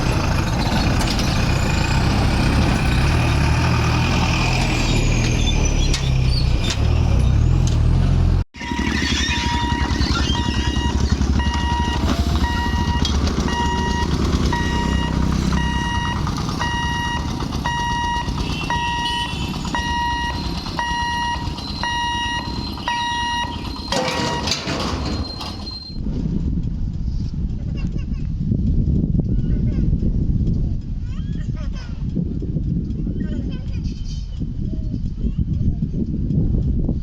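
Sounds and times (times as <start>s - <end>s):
train rumbling past: 0.0s - 26.0s
level crossing warning beeps: 8.6s - 26.0s.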